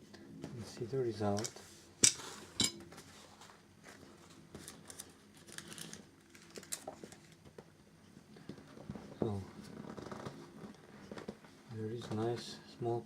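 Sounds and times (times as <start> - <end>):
paper rustling: 3.4 - 7.4.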